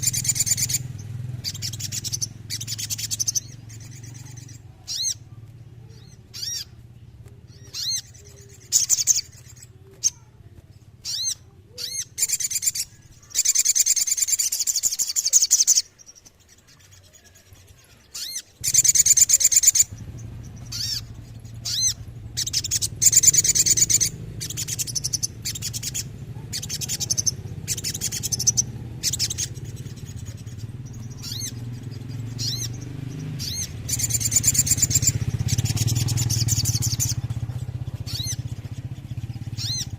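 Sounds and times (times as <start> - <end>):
bird call notes and trills: 0.0 - 39.9
steady low hum: 18.6 - 39.9.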